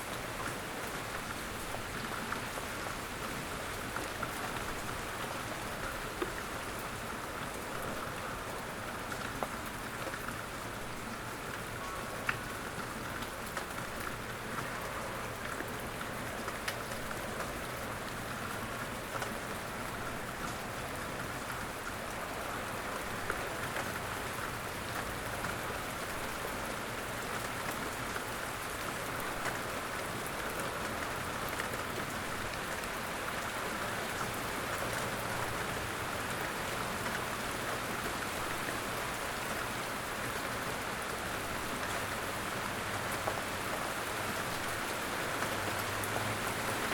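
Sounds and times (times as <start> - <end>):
steady rain falling: 0.0 - 46.9.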